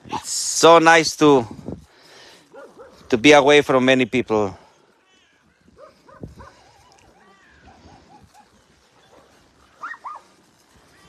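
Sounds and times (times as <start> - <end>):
dogs whining: 5.7 - 10.3
dog yips: 5.8 - 10.3.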